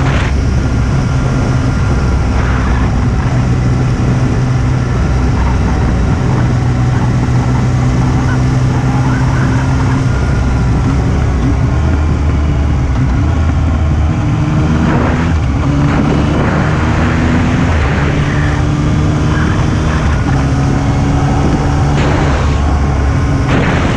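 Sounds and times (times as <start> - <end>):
motorcycle engine revving: 0.0 - 23.9
rushing noise bursts: 21.9 - 23.9.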